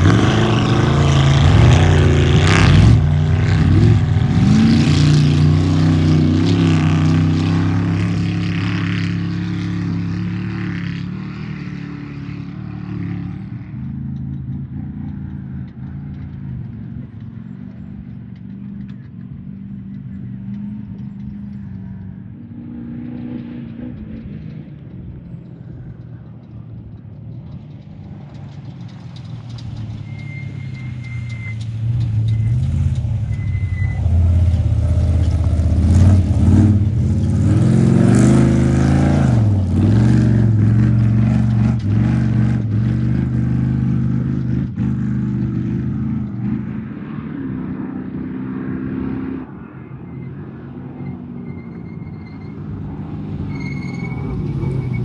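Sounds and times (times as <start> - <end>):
race truck engine passing: 0.0 - 13.8, 27.5 - 55.0.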